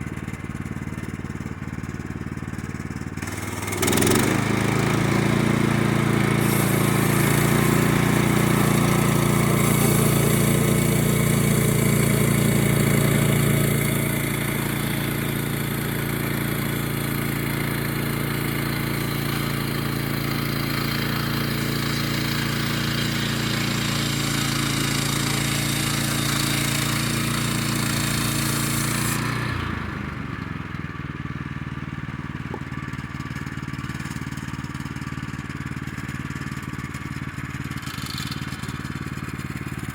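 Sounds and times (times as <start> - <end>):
small gasoline engine running: 0.0 - 39.9
saw blade hiss: 3.4 - 29.5.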